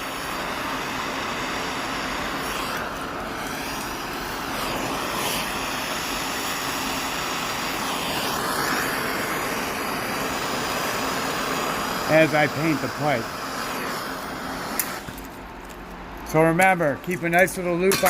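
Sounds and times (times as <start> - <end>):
torch flame burning: 0.0 - 18.0.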